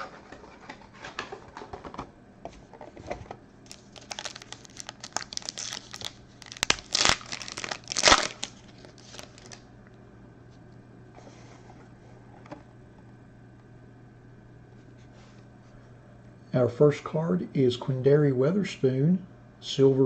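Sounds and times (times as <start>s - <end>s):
wrapper crinkling: 3.7s - 9.6s
wrapper ripping: 3.7s - 9.6s.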